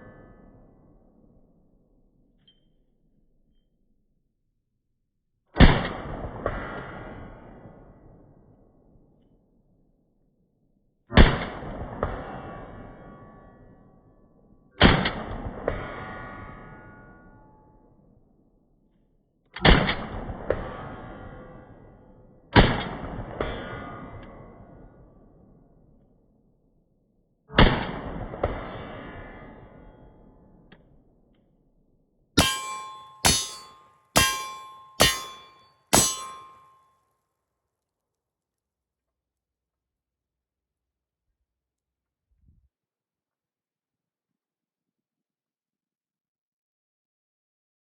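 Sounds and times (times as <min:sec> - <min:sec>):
ringing echo: 0:32.4 - 0:36.6
sharp crack: 0:32.4 - 0:36.6.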